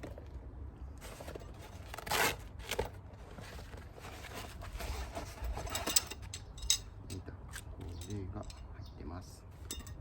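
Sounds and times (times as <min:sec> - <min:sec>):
handling noises: 0:01.0 - 0:08.7.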